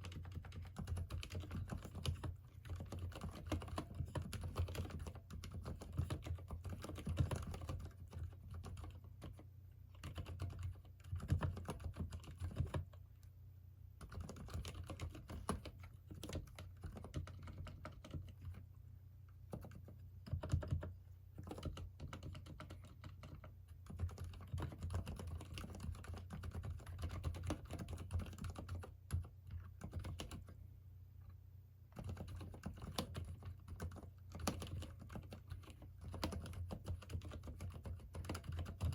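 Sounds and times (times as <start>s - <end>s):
typing on mechanical keyboard: 0.0s - 13.0s, 14.0s - 18.6s, 19.5s - 30.6s, 31.9s - 38.9s.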